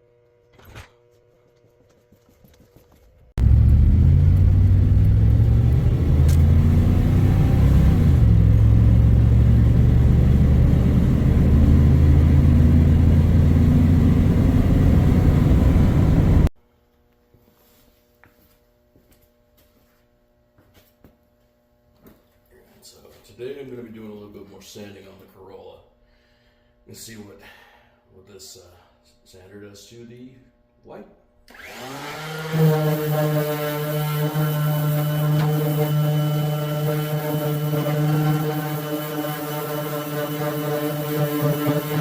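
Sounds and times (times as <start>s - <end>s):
car engine running: 3.4s - 16.5s.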